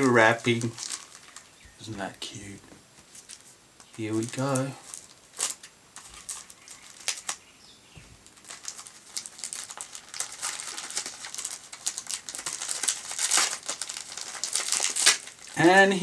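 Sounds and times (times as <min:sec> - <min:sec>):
wrapping paper crinkling: 0:00.0 - 0:01.8, 0:03.0 - 0:07.4, 0:08.2 - 0:16.0.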